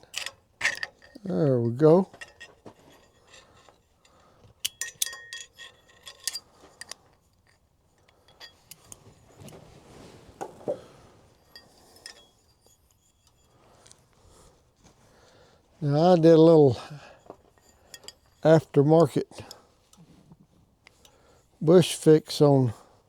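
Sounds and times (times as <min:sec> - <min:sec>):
metallic clinks of hand tools: 0:00.0 - 0:09.6, 0:11.3 - 0:14.0, 0:16.7 - 0:20.0.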